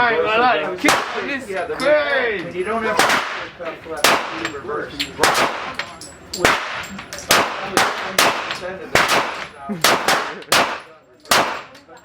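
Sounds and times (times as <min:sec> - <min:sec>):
gunshots with ringing echo: 0:00.8 - 0:01.4, 0:02.9 - 0:04.6, 0:05.2 - 0:11.8.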